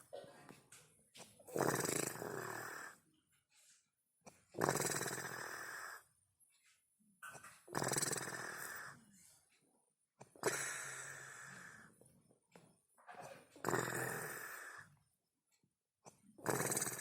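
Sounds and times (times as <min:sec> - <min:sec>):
woman snoring: 0:01.5 - 0:03.0, 0:04.6 - 0:06.0, 0:07.7 - 0:09.0, 0:13.6 - 0:14.8, 0:16.4 - 0:17.0.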